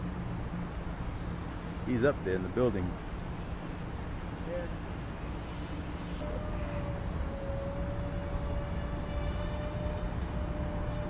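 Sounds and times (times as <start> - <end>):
model airplane motor droning: 5.2 - 11.0
wind rumble on microphone: 6.2 - 11.0.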